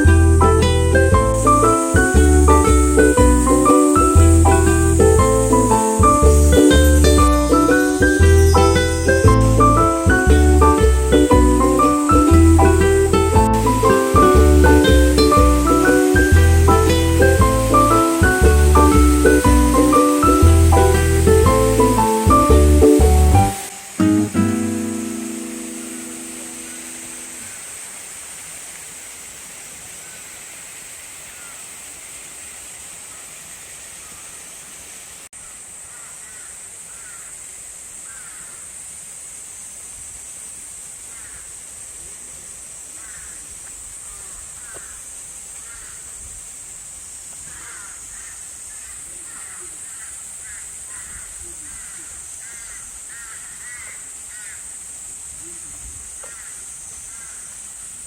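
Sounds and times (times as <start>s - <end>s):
high-pitched insect drone: 0.0s - 24.0s.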